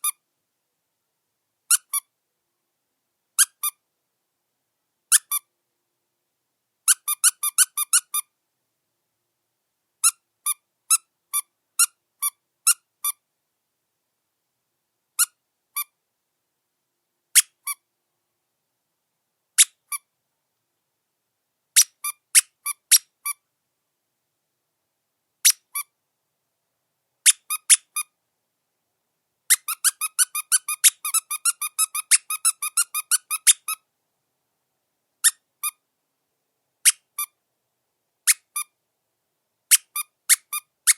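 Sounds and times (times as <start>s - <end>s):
squeaky dog toy squeaks: 1.7s - 2.1s, 3.4s - 3.8s, 5.1s - 5.5s, 6.9s - 8.3s, 10.0s - 13.2s, 15.2s - 15.9s, 17.4s - 17.8s, 19.6s - 20.0s, 21.8s - 23.4s, 25.4s - 25.9s, 27.2s - 28.1s, 29.5s - 33.8s, 35.2s - 35.8s, 36.8s - 37.4s, 38.2s - 38.7s, 39.7s - 40.9s.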